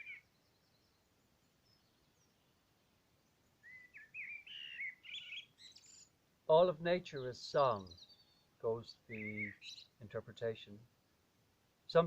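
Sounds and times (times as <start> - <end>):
songbird warbling: 0.0 - 0.3, 3.6 - 6.2, 7.8 - 8.5, 9.1 - 10.0.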